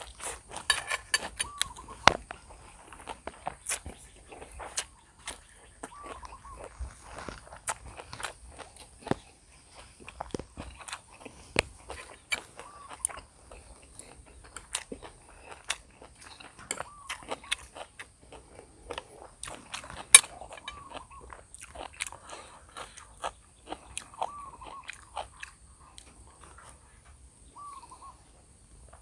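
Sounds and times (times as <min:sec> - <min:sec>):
chewing and biting food: 0:00.0 - 0:27.0.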